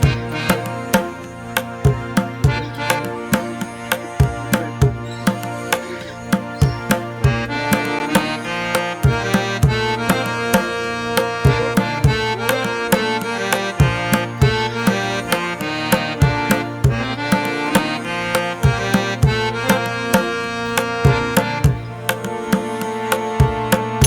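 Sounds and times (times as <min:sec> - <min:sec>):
hand drum beat: 0:00.0 - 0:18.0.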